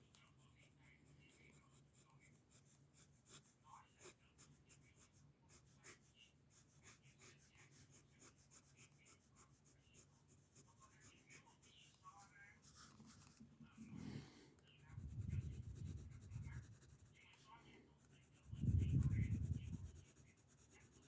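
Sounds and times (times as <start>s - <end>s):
pencil scratching on paper: 0.0s - 21.0s
low muffled rumble: 18.5s - 20.0s.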